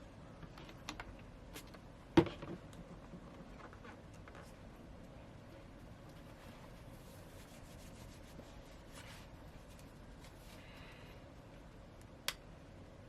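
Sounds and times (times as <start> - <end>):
tissue wiping phone cover: 5.6 - 10.8.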